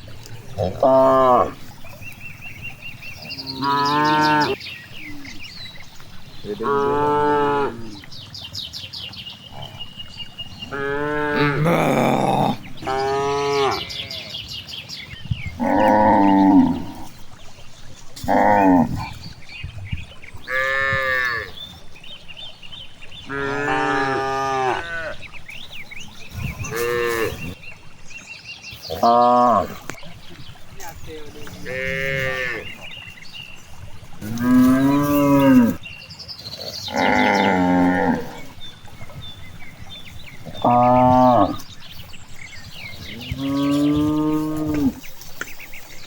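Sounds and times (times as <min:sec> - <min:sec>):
cattle mooing: 0:00.5 - 0:01.6, 0:03.4 - 0:04.6, 0:06.4 - 0:08.0, 0:10.6 - 0:14.3, 0:15.6 - 0:17.2, 0:18.2 - 0:19.2, 0:20.5 - 0:21.6, 0:23.3 - 0:25.2, 0:26.5 - 0:27.6, 0:31.4 - 0:32.8, 0:34.2 - 0:35.8, 0:36.9 - 0:38.6, 0:40.3 - 0:41.6, 0:43.0 - 0:45.1.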